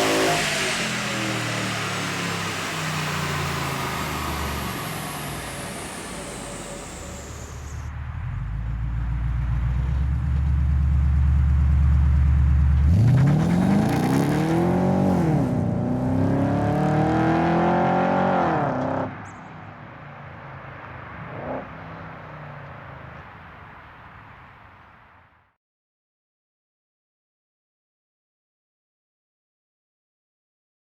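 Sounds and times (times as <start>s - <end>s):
car engine rumbling and revving: 0.0s - 19.7s.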